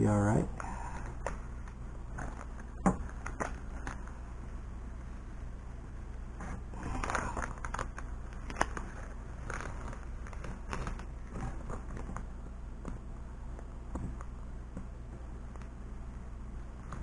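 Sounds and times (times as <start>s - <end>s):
low steady hum: 0.0s - 17.0s
tape crinkling and crackling: 0.6s - 4.2s, 6.4s - 14.9s.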